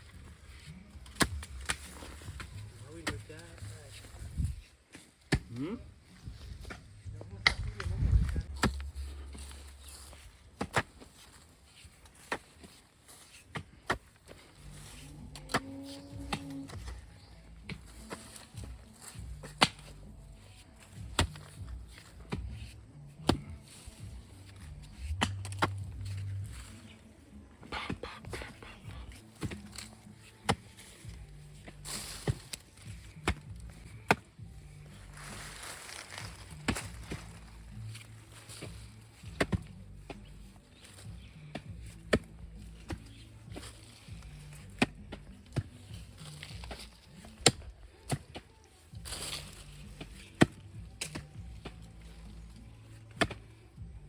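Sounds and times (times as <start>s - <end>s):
digging tool striking ground: 1.0s - 3.3s, 7.4s - 11.2s, 17.6s - 20.0s, 20.8s - 23.8s, 24.8s - 26.7s, 27.6s - 53.5s.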